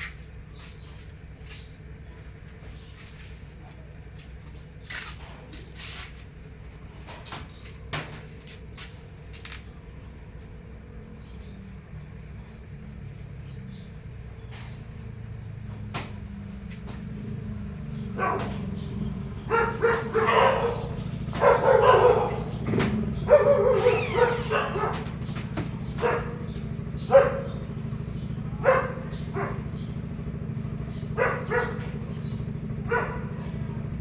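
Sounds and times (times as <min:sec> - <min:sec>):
dog barking: 0:17.3 - 0:34.0.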